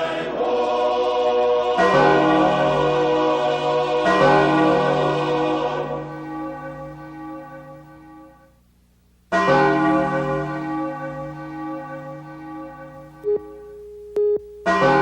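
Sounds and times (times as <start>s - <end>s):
large bell tolling: 9.3s - 13.0s.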